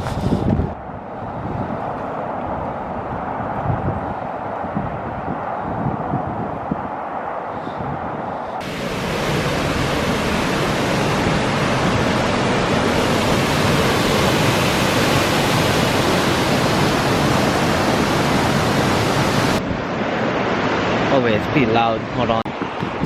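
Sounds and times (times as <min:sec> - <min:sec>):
waterfall roaring: 0:08.6 - 0:23.0.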